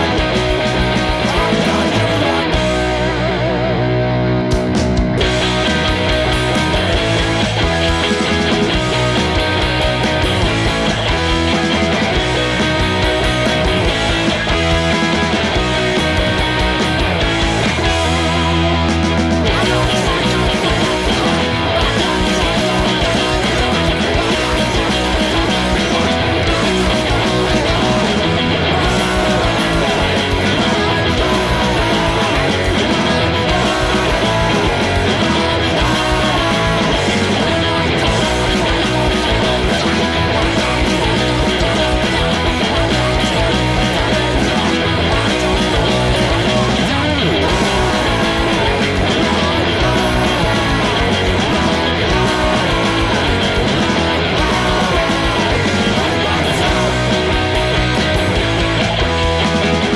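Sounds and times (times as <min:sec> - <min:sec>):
punk rock music with guitar: 0:00.0 - 0:59.9.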